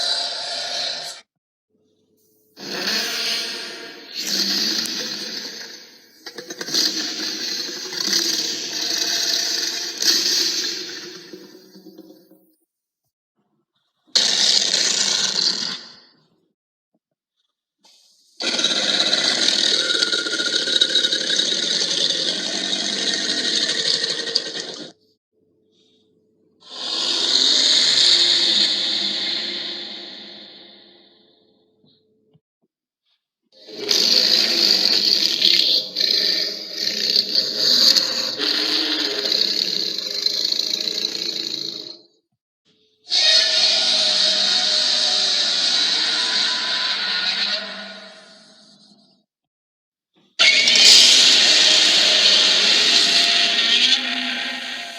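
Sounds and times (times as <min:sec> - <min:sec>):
harsh grinding monster cry: 0:00.0 - 0:01.2, 0:02.6 - 0:11.4, 0:14.2 - 0:15.9, 0:18.4 - 0:25.0, 0:26.7 - 0:31.3, 0:33.6 - 0:41.9, 0:43.1 - 0:48.8, 0:50.4 - 0:54.9.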